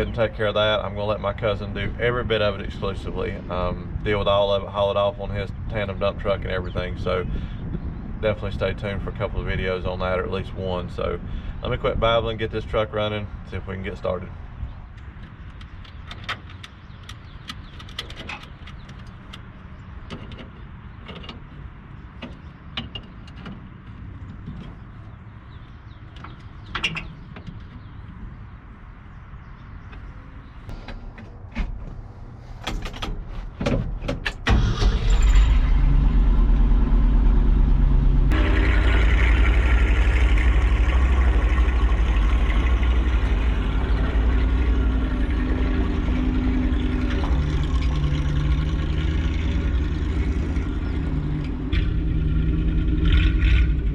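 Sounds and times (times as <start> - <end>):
truck engine running: 34.5 - 53.9.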